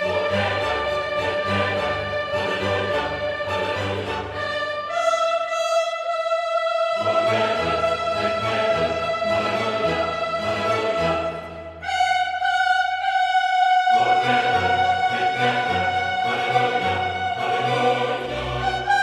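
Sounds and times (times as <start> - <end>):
orchestral music: 0.0 - 5.0, 7.0 - 12.0, 14.0 - 19.0.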